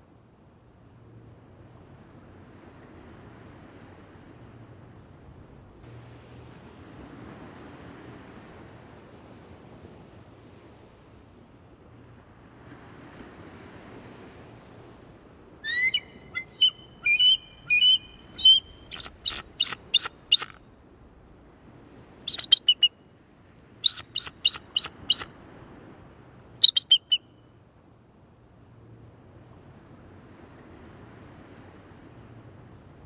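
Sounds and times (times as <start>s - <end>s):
faint background hiss: 0.0s - 33.0s
eagle calling: 15.6s - 20.6s, 22.3s - 22.9s, 23.8s - 25.3s, 26.6s - 27.2s.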